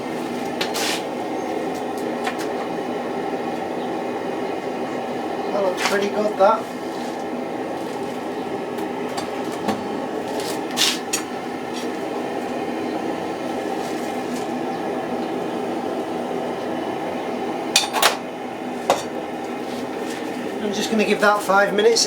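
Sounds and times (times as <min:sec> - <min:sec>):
gas forge burner roaring: 0:00.0 - 0:22.0.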